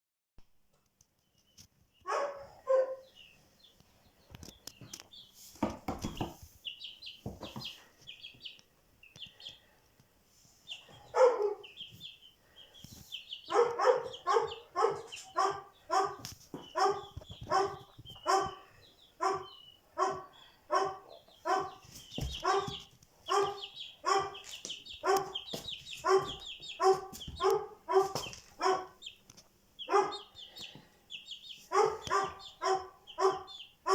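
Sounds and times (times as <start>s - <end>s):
small birds chirping: 0.8s - 33.9s
animal barking: 2.1s - 3.2s, 11.1s - 11.9s, 13.4s - 29.2s, 29.8s - 30.7s, 31.4s - 33.9s.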